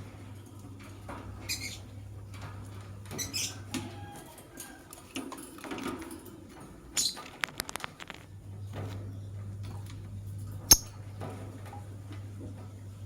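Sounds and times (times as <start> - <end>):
low steady hum: 7.6 - 13.0.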